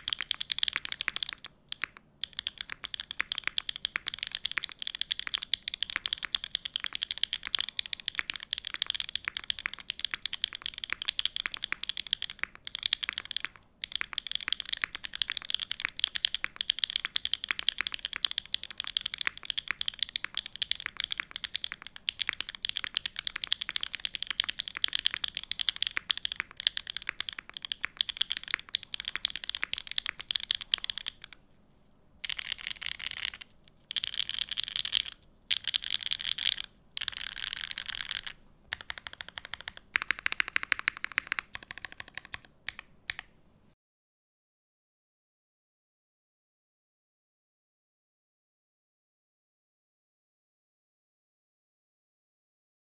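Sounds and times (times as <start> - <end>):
mechanical keyboard key clacks: 32.2 - 43.2.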